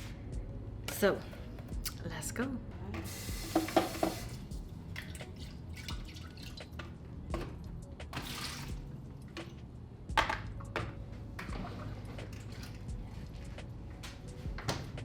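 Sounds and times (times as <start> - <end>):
water dripping: 4.9 - 6.9.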